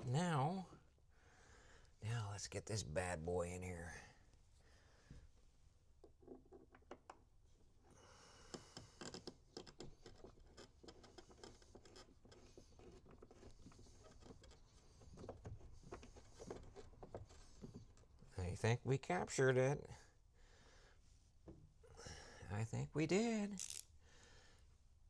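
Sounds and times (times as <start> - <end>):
faint scraping and scratching: 8.6 - 18.6.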